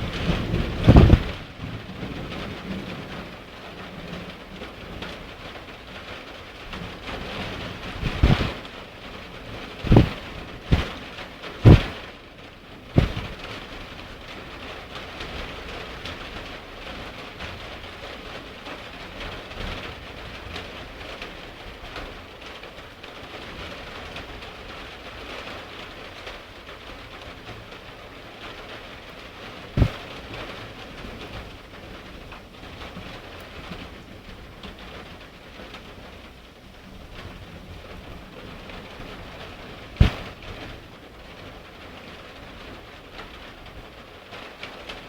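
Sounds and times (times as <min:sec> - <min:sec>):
heavy rain falling: 0:00.0 - 0:45.0
sharp thumps: 0:00.9 - 0:01.3, 0:08.0 - 0:08.6, 0:09.8 - 0:11.0, 0:11.6 - 0:12.0, 0:13.0 - 0:13.3, 0:29.8 - 0:30.0, 0:40.0 - 0:40.4.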